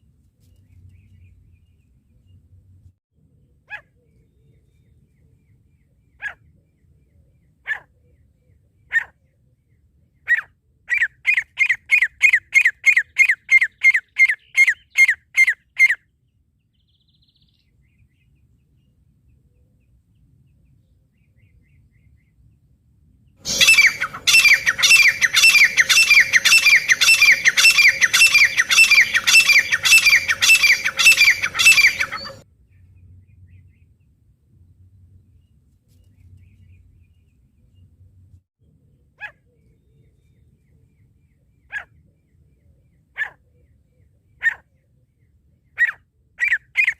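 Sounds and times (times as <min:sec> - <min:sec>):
francolin calling: 0:23.4 - 0:32.4.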